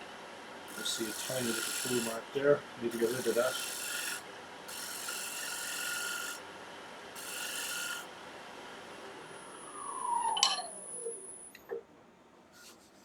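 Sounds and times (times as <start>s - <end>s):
lathe tool cutting wood: 0.7s - 6.4s, 7.2s - 8.1s
whine falling in pitch: 9.4s - 11.6s.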